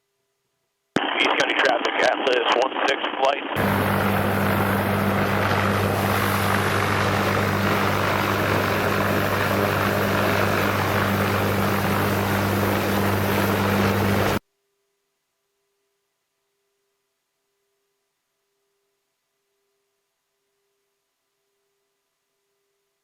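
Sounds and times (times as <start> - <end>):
helicopter rotor and engine drone: 3.4 - 14.4
faint steady tone: 14.4 - 23.0.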